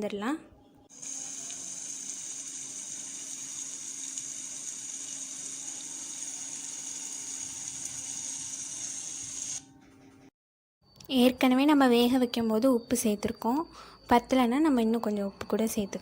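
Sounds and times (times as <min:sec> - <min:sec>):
meat sizzling in hot oil: 0:00.9 - 0:09.6.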